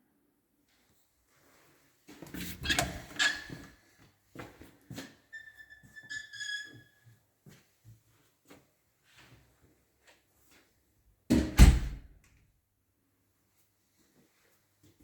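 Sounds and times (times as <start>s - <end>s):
short high squeak: 5.4s - 7.0s.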